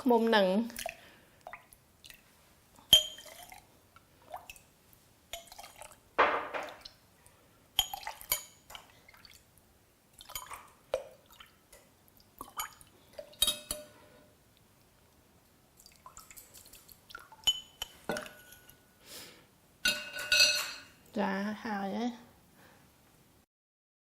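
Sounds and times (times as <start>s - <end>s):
liquid splashing and dripping: 0.6s - 4.7s, 5.3s - 7.0s, 7.8s - 13.8s, 15.7s - 18.3s
metal spoon clinking on glass: 2.9s - 3.4s, 13.4s - 13.9s, 17.4s - 18.8s, 19.8s - 20.9s.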